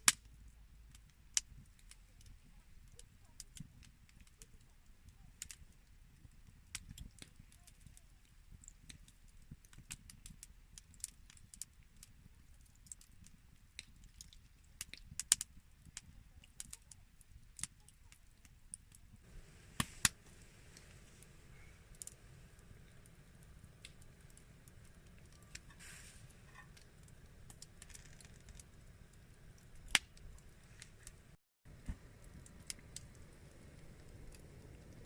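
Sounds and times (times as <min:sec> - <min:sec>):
campfire crackling: 0:00.0 - 0:35.0
soft hiss: 0:19.1 - 0:35.0.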